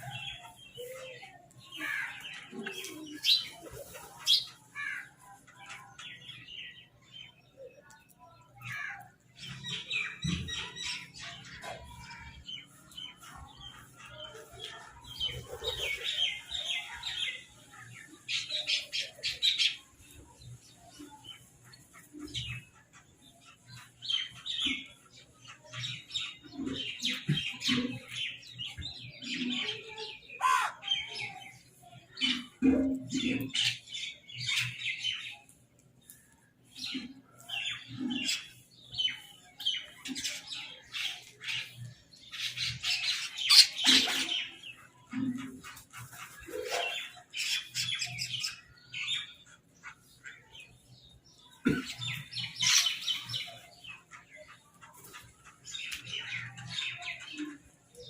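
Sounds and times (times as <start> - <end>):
crows squawking: 30.4 - 30.9.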